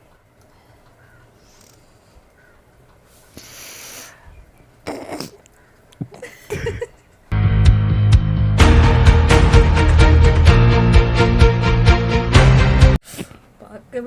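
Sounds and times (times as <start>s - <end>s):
person sniffing hard: 3.2s - 4.2s, 13.0s - 13.4s
loud music: 7.3s - 13.0s.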